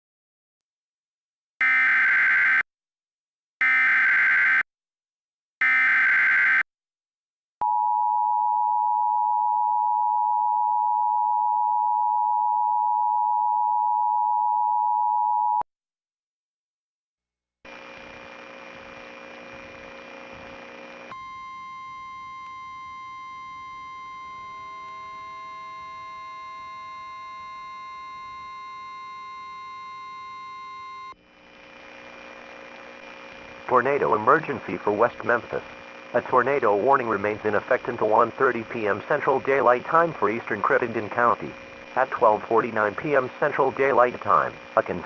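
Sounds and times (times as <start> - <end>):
steady held tones: 21.1 - 31.2
data burst tones: 33.7 - 45.0.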